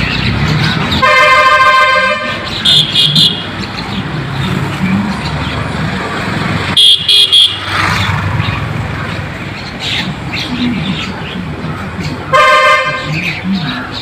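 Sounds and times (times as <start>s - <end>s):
road traffic noise: 0.0s - 14.0s
high-pitched horn toots: 1.0s - 3.5s.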